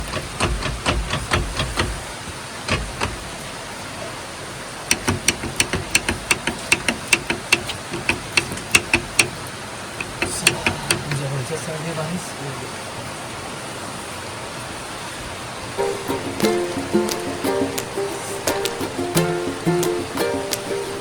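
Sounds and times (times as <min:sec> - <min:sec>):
metallic clicking and knocking: 0:00.0 - 0:02.0, 0:02.7 - 0:03.2, 0:04.9 - 0:09.4.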